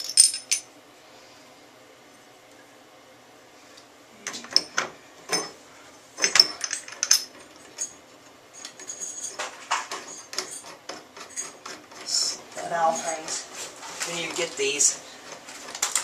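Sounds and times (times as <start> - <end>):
metal tools clinking: 0.0 - 0.7, 6.2 - 8.0.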